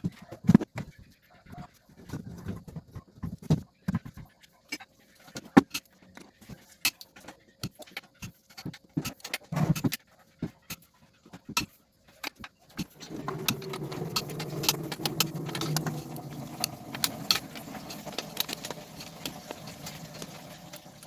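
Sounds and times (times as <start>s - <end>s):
metal scraping: 12.8s - 21.0s.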